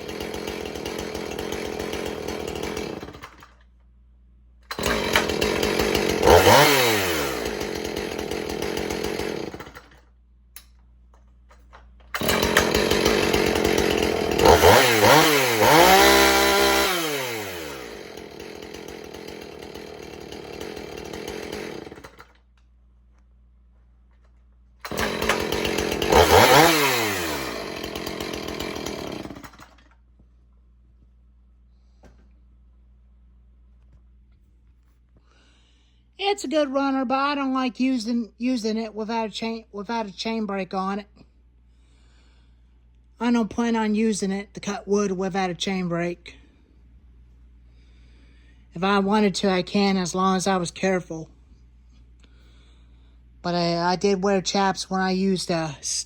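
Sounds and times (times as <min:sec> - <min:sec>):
chainsaw engine revving: 0:00.0 - 0:03.6, 0:04.7 - 0:10.0, 0:12.1 - 0:22.4, 0:24.8 - 0:30.0, 0:47.7 - 0:51.3.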